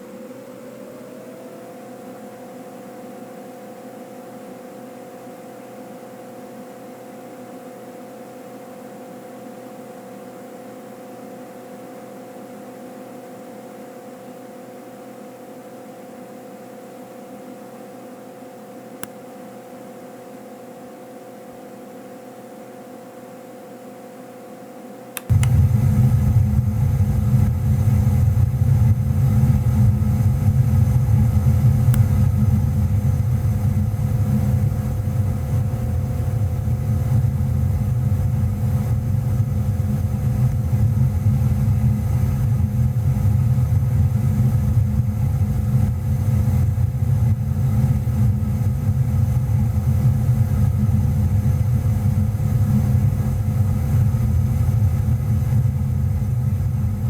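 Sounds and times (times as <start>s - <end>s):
gas furnace rumbling: 25.2s - 57.0s.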